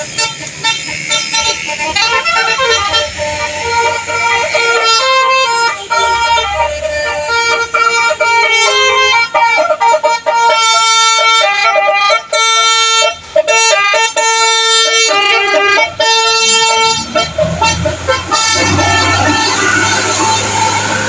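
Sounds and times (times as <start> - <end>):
bus horn melody: 0.0 - 21.0
low engine rumble: 0.0 - 21.0.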